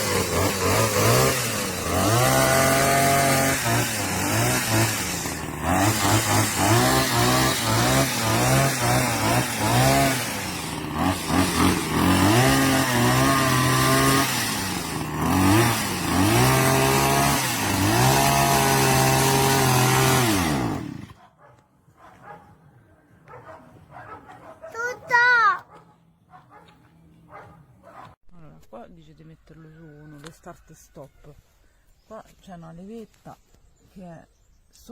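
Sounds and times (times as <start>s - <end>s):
brushcutter engine revving: 0.0s - 21.2s.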